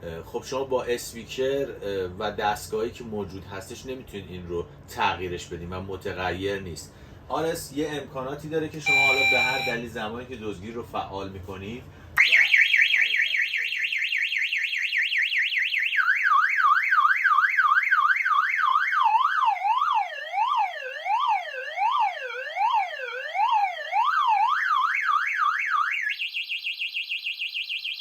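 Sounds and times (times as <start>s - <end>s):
electronic alarm siren: 8.8s - 9.8s, 12.2s - 28.0s.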